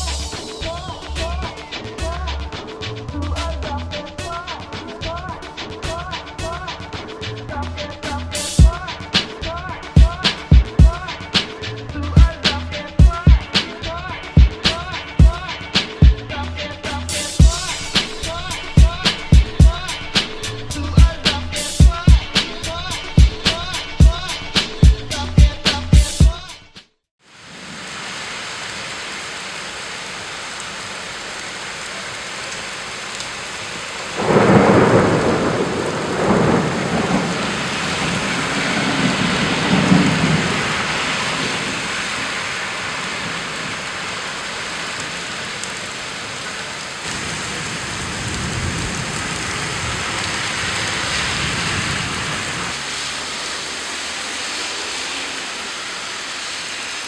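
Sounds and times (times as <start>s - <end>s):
heavy rain falling: 0.0s - 3.0s, 3.6s - 16.2s, 16.9s - 24.6s, 27.2s - 57.0s
thunder rumbling: 33.7s - 52.8s.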